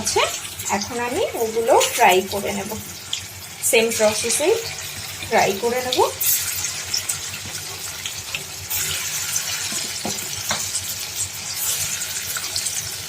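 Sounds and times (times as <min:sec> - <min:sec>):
chicken sizzling in hot oil: 0:00.0 - 0:13.0
oil crackling and popping: 0:04.6 - 0:13.0.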